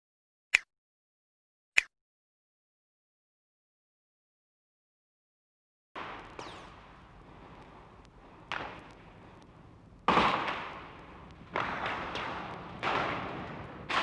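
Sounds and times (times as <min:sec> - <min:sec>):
sharp bangs with echo: 0:10.1 - 0:14.0.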